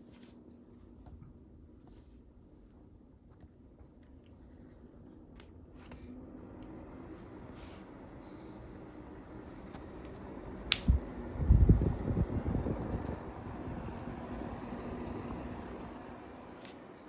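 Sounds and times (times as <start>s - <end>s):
humidifier fan hissing: 5.6s - 17.0s.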